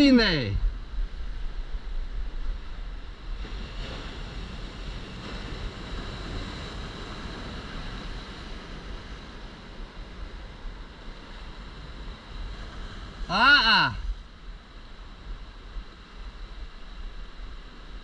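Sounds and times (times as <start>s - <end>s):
wind buffeting microphone: 0.0s - 13.3s
ocean surf washing: 0.0s - 18.0s.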